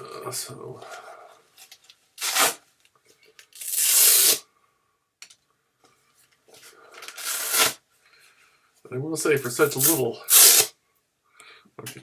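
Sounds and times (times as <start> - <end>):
velcro strips ripping: 2.2 - 2.6, 3.6 - 4.4, 7.1 - 7.8, 9.7 - 10.7.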